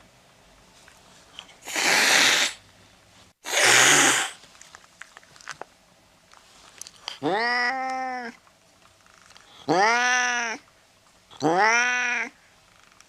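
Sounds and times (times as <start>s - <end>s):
cat hissing: 1.6s - 2.6s, 3.4s - 4.4s.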